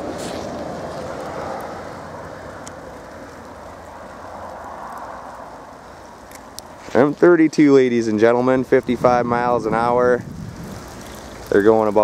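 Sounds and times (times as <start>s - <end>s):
car driving on snowy road: 0.0s - 7.3s
tyre and wind noise: 0.0s - 12.0s.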